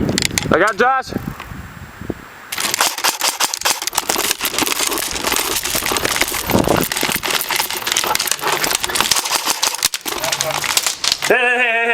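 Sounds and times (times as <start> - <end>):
dense clicks and crackle: 2.5 - 11.6.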